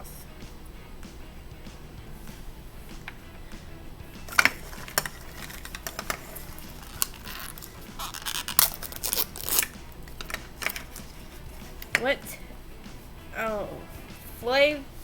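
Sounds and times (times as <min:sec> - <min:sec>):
plastic wrapping crinkling and tearing: 0:04.3 - 0:11.1.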